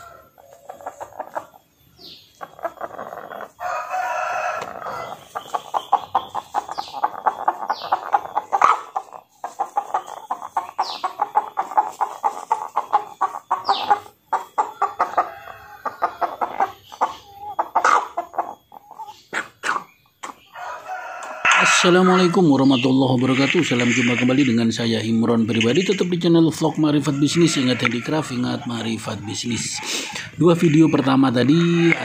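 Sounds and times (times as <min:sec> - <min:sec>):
rooster crowing: 0:00.0 - 0:00.5, 0:03.5 - 0:05.2, 0:15.0 - 0:16.5, 0:20.5 - 0:22.4, 0:26.9 - 0:29.1, 0:29.8 - 0:32.0
chickens clucking rapidly: 0:00.0 - 0:32.0.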